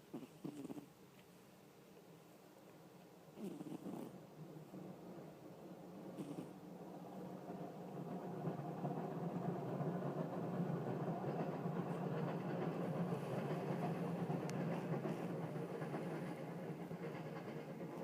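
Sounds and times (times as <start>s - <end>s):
cat snoring: 0.0s - 0.9s, 3.4s - 4.2s, 6.1s - 6.6s.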